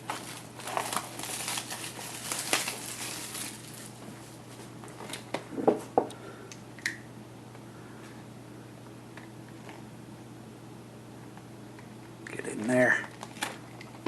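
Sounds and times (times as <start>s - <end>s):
plastic wrap crinkling: 0.0s - 5.4s, 12.7s - 14.0s.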